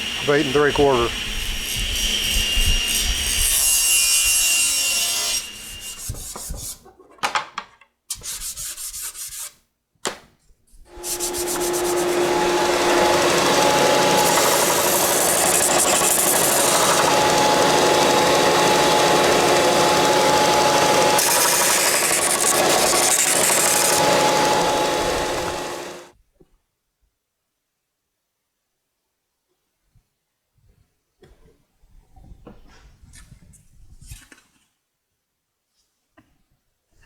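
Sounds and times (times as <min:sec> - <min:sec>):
power saw cutting board: 0:00.0 - 0:06.4, 0:10.9 - 0:26.1.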